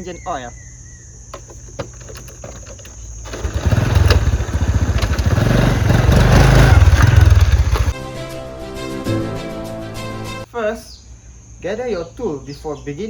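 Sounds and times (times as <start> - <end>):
motorcycle engine starting: 1.4 - 8.0.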